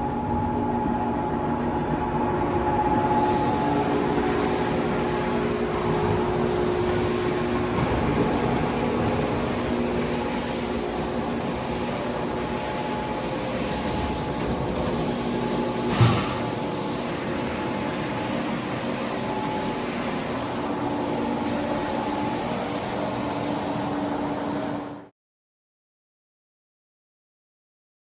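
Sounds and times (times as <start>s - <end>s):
machine clunk: 13.8s - 16.7s.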